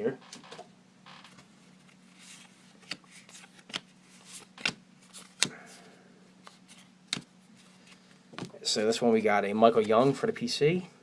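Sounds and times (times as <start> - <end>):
cards rustling: 1.3 - 8.5, 9.6 - 10.2.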